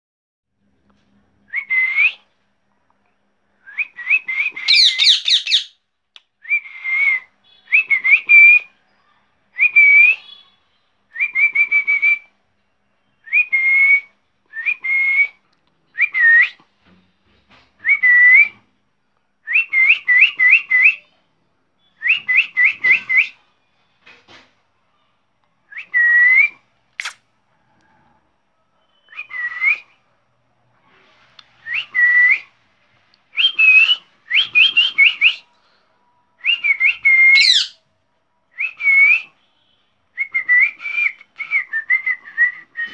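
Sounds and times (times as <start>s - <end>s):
parrot whistling: 4.4s - 5.7s, 36.6s - 37.8s.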